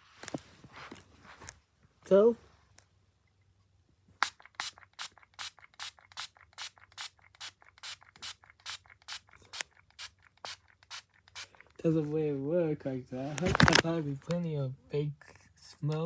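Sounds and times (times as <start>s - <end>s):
spray bottle squirts: 4.2s - 11.8s.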